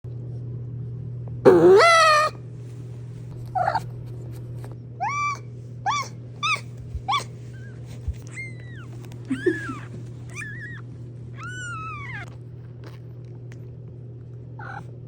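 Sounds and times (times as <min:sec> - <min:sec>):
short high-pitched cat mews: 0:01.5 - 0:02.3
cat meowing: 0:01.5 - 0:02.4, 0:08.2 - 0:10.8, 0:11.4 - 0:12.3, 0:14.6 - 0:14.8.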